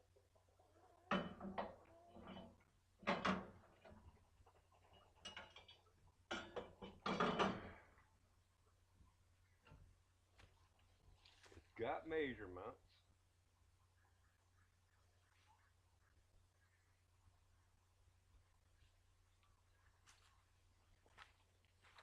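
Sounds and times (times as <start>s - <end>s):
metal parts clunking and rattling: 6.4s - 7.8s.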